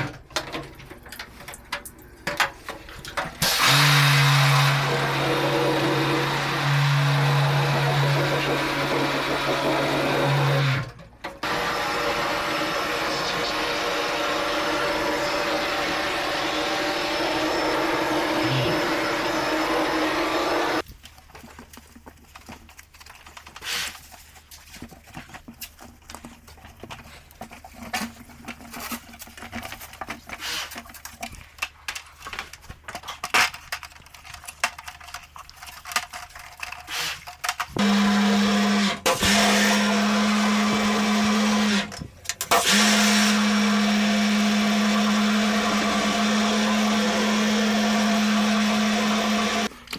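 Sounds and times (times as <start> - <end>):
knocks and clicks of parts handled: 0.0 - 3.4
cleaning machine motor hissing and humming: 3.4 - 10.8, 11.4 - 20.8, 37.8 - 41.9, 42.5 - 49.7.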